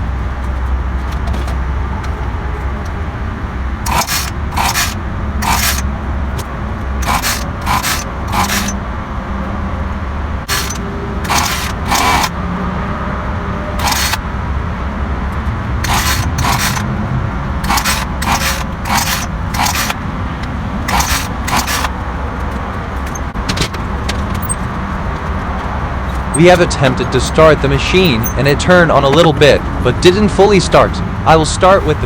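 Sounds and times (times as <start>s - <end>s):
chainsaw starter cord pulls: 3.8s - 5.9s, 7.0s - 8.8s, 10.4s - 12.3s, 13.8s - 14.2s, 15.8s - 16.9s, 17.6s - 22.0s, 26.1s - 28.6s.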